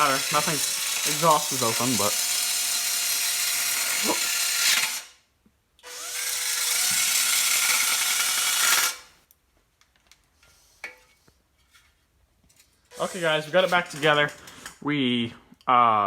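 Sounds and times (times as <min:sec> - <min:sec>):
handheld power tool running: 0:00.0 - 0:05.2, 0:05.8 - 0:09.1, 0:12.9 - 0:14.1.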